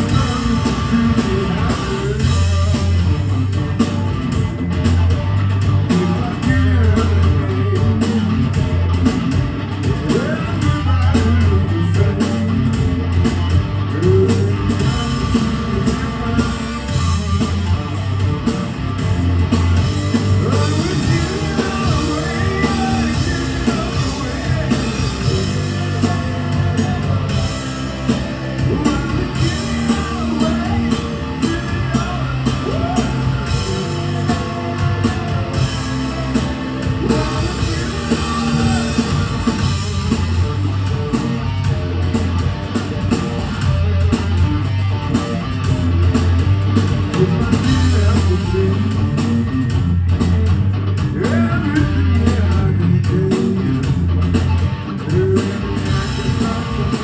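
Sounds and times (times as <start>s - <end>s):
lead vocal singing: 0.0s - 3.8s, 5.8s - 13.1s, 13.8s - 17.7s, 19.4s - 40.6s, 47.0s - 49.7s, 51.1s - 54.0s, 54.9s - 57.0s
bass guitar: 0.0s - 57.0s
drum kit: 0.0s - 57.0s
electric guitar: 0.0s - 57.0s.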